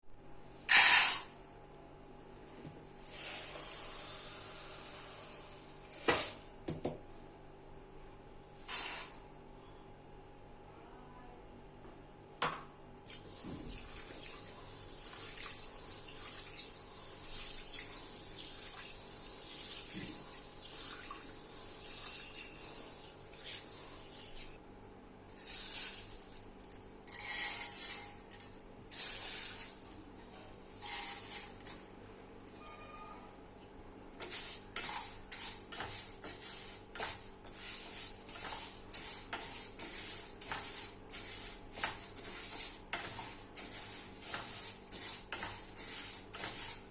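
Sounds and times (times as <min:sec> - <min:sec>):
tap water running into sink: 0:13.2 - 0:22.4.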